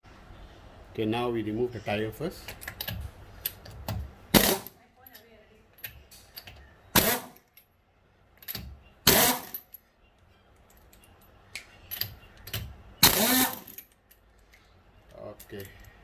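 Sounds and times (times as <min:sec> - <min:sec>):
metal tool bursts: 0:02.6 - 0:04.8, 0:05.8 - 0:07.6, 0:08.4 - 0:09.8, 0:11.8 - 0:14.0
light clicks and clinks: 0:09.6 - 0:12.7, 0:13.7 - 0:16.0.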